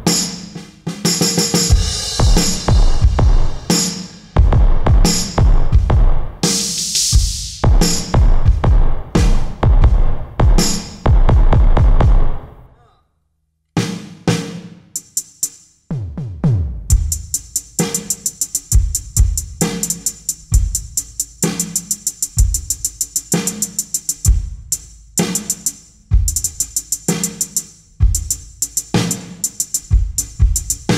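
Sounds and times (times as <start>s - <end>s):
electronic drum beat: 0.0s - 12.7s, 15.0s - 30.9s
electronic tom hits: 4.4s - 6.3s, 7.6s - 12.6s.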